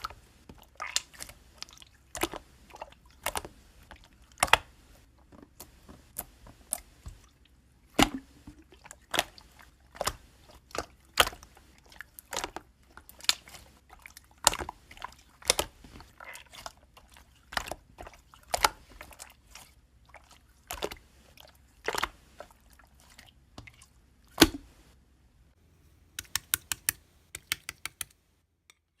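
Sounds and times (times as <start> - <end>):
sharp clicks and taps: 26.2 - 28.8.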